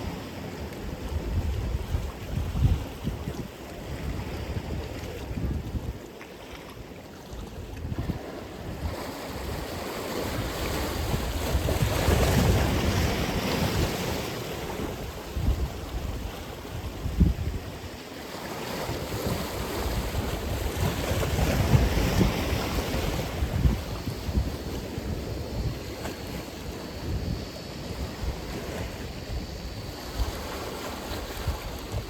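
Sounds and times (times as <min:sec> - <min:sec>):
waves breaking on shore: 0:00.0 - 0:32.0
wind on microphone: 0:00.0 - 0:32.0.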